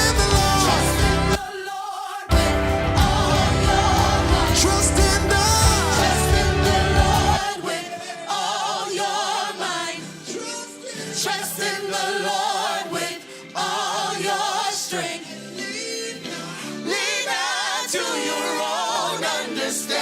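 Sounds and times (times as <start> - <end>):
gospel band music: 0.0 - 1.5, 2.3 - 9.7
gospel choir singing: 0.0 - 20.0.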